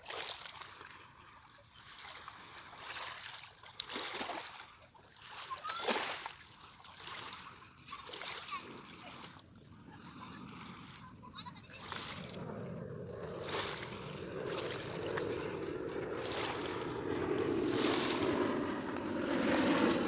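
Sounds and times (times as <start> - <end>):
airplane engine drone: 9.8 - 20.0.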